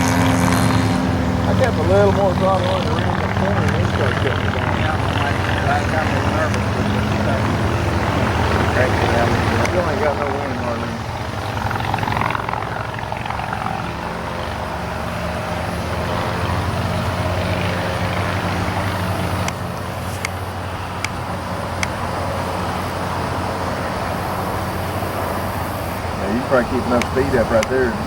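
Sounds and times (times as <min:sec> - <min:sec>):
two-stroke model plane engine: 0:00.0 - 0:28.0
faint sharp clicks: 0:27.0 - 0:27.7.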